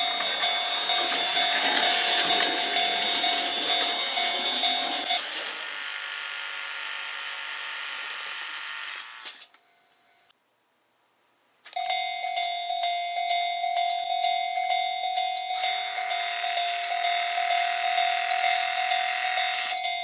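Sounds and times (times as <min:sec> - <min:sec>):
level crossing warning bell: 0:00.0 - 0:05.3, 0:11.8 - 0:20.0.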